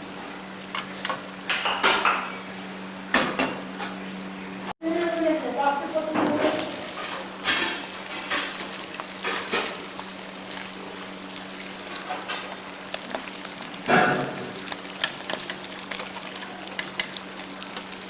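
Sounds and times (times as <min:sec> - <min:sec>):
fish sizzling in hot oil: 0:04.8 - 0:18.0.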